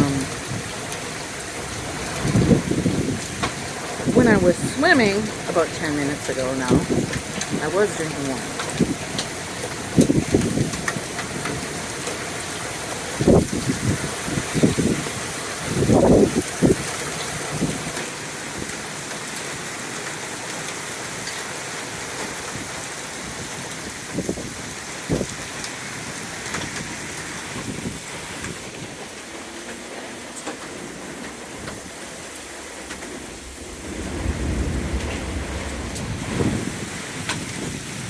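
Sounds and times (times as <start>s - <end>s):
heavy rain pouring: 0.0s - 38.0s.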